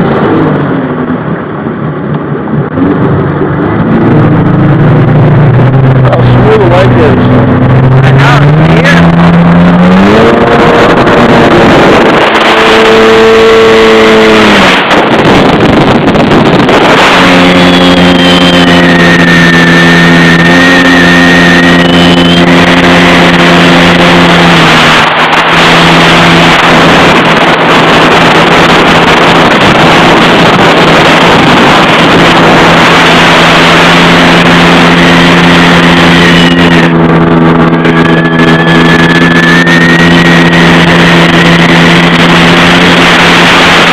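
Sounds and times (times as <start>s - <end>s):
heavy wind: 0.0s - 43.9s
jet ski engine running: 0.0s - 43.9s
water rushing: 0.0s - 43.9s.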